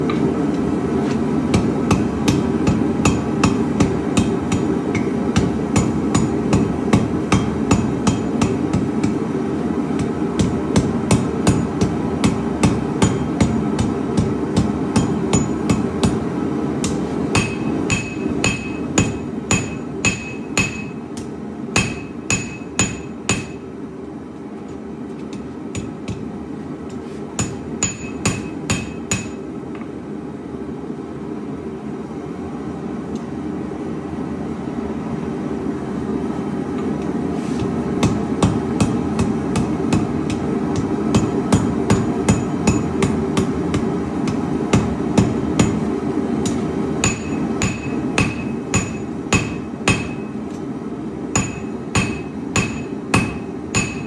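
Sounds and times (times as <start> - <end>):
steady low hum: 0.0 - 54.0
hammer striking steel: 1.5 - 9.2, 10.0 - 16.2, 16.8 - 23.7, 25.3 - 26.3, 27.4 - 29.4, 38.0 - 50.4, 51.4 - 54.0.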